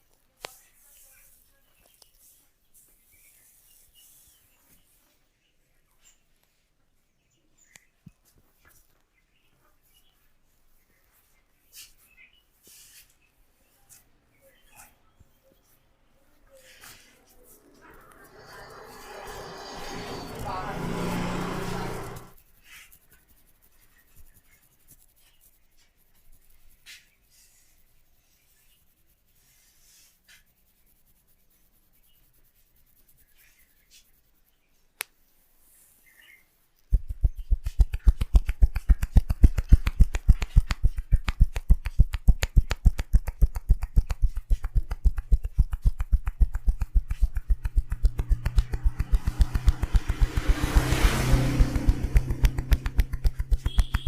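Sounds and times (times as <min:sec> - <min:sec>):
hands rubbing a head: 0:10.7 - 0:14.1, 0:16.5 - 0:36.1, 0:36.8 - 0:54.0
rapid tapping on a head: 0:36.8 - 0:54.0.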